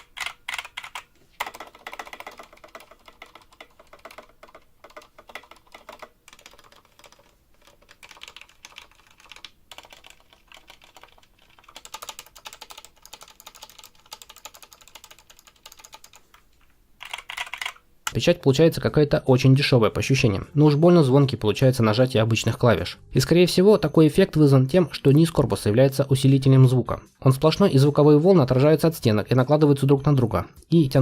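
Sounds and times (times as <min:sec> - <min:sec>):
mechanical keyboard typing: 0:00.0 - 0:16.4, 0:17.0 - 0:18.2.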